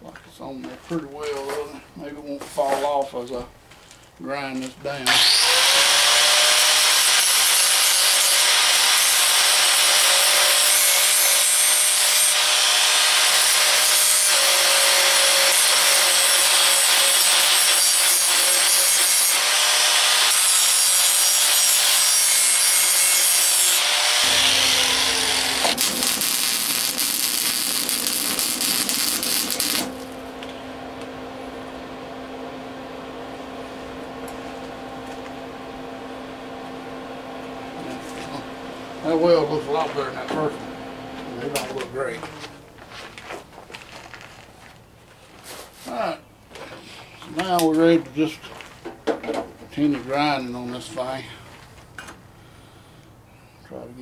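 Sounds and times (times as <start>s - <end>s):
angle grinder grinding metal: 5.0s - 35.6s, 37.4s - 42.4s.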